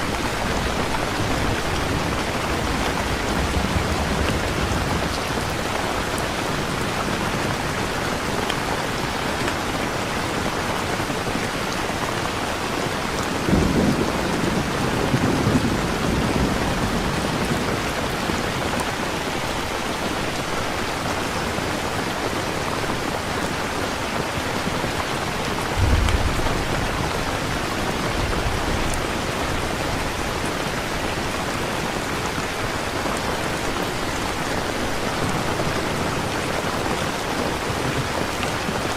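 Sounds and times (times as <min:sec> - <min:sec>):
thunder rumbling: 0:00.0 - 0:07.8, 0:13.3 - 0:18.6, 0:25.5 - 0:31.4
steady rain falling: 0:00.0 - 0:38.9.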